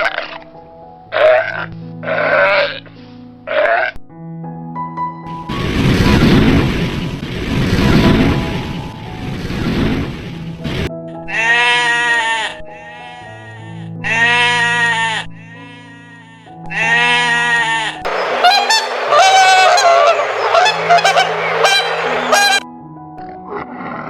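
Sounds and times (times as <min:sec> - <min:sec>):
background music: 0:00.0 - 0:24.0
long loud animal calls: 0:17.8 - 0:22.6
overlapping honking calls: 0:18.1 - 0:22.6.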